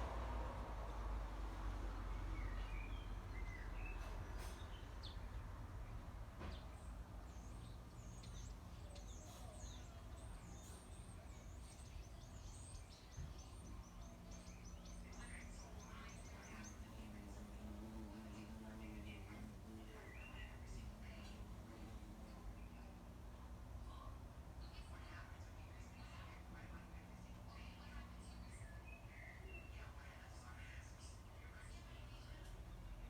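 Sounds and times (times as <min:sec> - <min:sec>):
faint birdsong: 0:00.9 - 0:33.0
low background rumble: 0:11.3 - 0:28.4.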